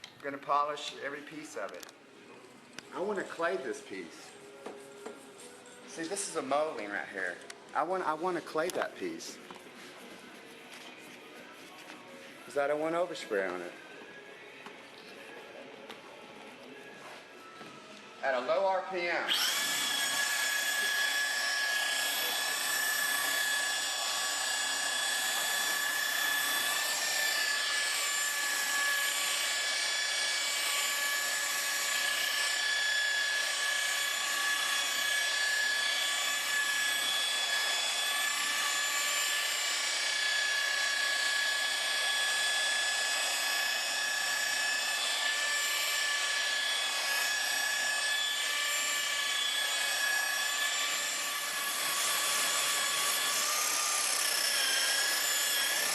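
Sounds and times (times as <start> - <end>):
rotary buffer motor whine: 19.3 - 55.9.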